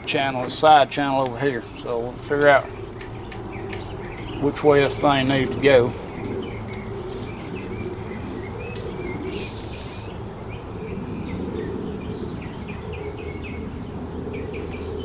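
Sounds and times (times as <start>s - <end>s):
low background murmur: 0.0s - 10.1s
crickets trilling: 0.0s - 15.0s.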